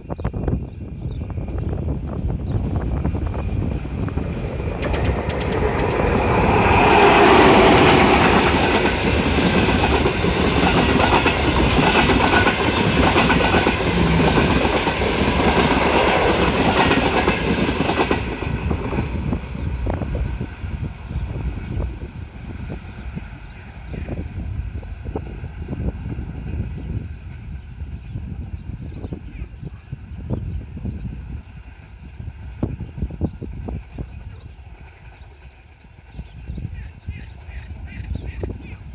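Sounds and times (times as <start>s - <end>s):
train wheels clattering over rail joints: 3.2s - 20.4s.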